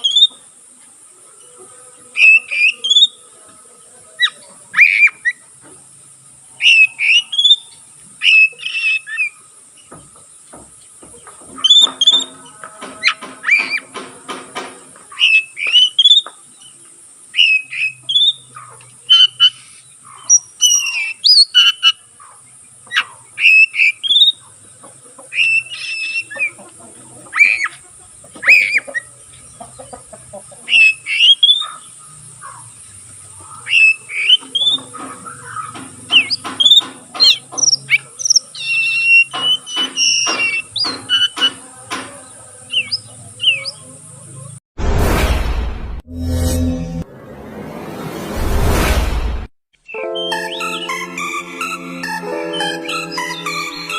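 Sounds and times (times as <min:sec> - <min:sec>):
bird whistling rising notes: 0:33.7 - 0:34.8, 0:49.8 - 0:53.9.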